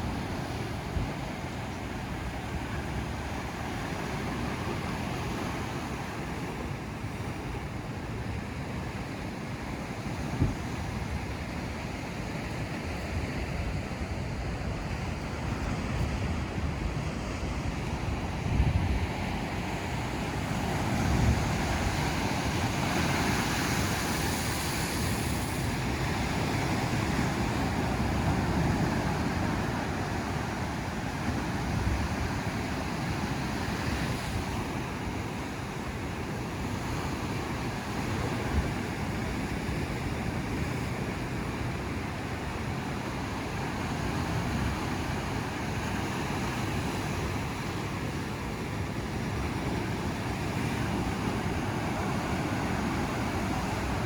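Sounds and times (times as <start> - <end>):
ocean surf breaking on beach: 0.0 - 54.0
wind buffeting microphone: 10.2 - 34.5.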